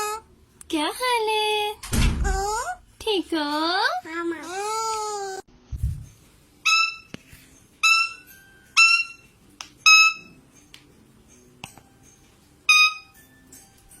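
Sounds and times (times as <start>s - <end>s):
parrot whistling: 6.6s - 7.1s, 7.8s - 10.4s, 12.7s - 13.2s.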